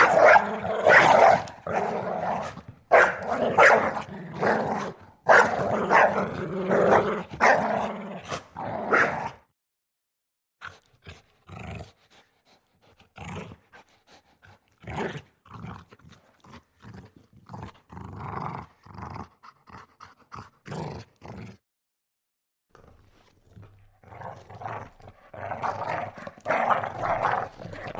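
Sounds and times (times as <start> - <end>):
dogs fighting: 0.0 - 6.2, 24.1 - 27.9
dog growling: 0.0 - 9.4, 22.8 - 27.9.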